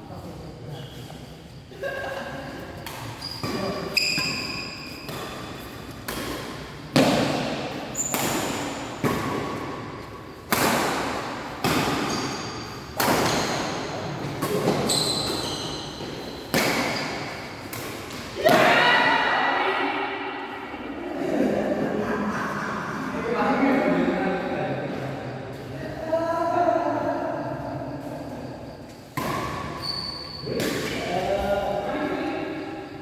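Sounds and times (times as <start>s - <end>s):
shoes squeaking on court floor: 2.4s - 6.9s, 7.7s - 10.4s, 11.8s - 18.4s, 27.8s - 31.7s
racket hitting shuttlecock: 2.8s - 9.8s, 10.5s - 18.7s.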